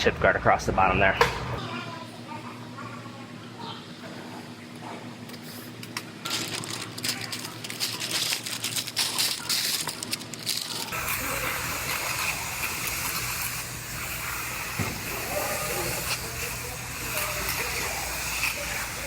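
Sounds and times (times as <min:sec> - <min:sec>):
masking tape and paper crinkling: 0:05.3 - 0:19.0
air spray gun hissing: 0:10.9 - 0:19.0.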